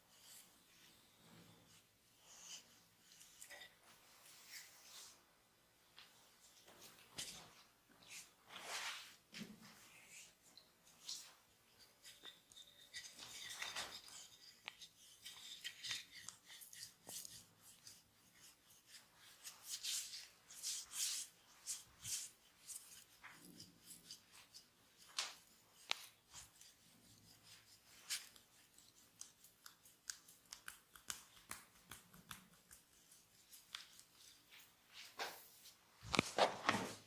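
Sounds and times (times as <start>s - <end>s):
hands swishing on oiled skin: 8.0s - 10.4s.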